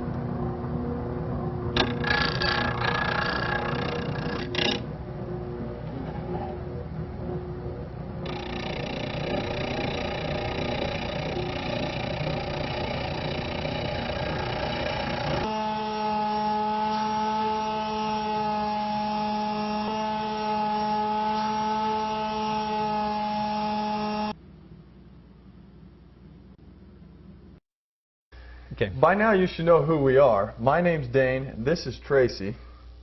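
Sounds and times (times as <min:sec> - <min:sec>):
power tool running: 0:01.8 - 0:04.9, 0:08.2 - 0:24.4.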